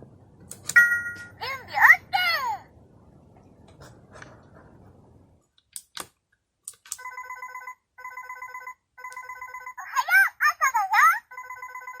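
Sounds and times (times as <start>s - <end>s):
sharp plastic clicks: 0.4s - 0.8s, 5.6s - 7.0s
alarm clock trilling beep: 7.0s - 9.9s, 11.2s - 12.0s.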